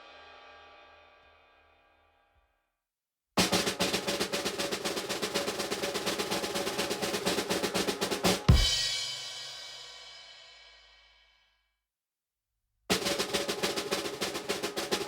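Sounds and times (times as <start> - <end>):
cymbal crash: 0.0 - 2.0, 8.5 - 10.6
snare drum roll: 3.4 - 10.4, 12.9 - 15.0.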